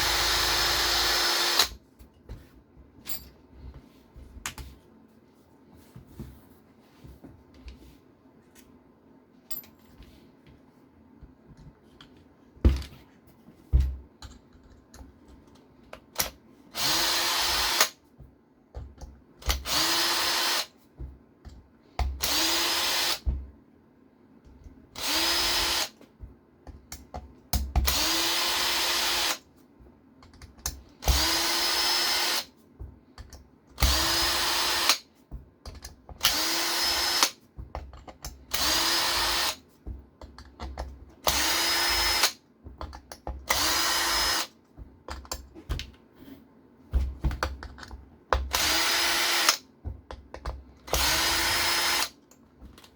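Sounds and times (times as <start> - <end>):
power driver whining: 0.0 - 1.7
clicks and knocks of handled parts: 11.4 - 13.1, 13.8 - 16.4, 30.2 - 31.0, 35.6 - 36.3, 37.6 - 38.5, 39.8 - 41.3, 42.7 - 43.5, 44.7 - 46.1, 47.0 - 48.6, 49.5 - 50.8, 52.2 - 52.9.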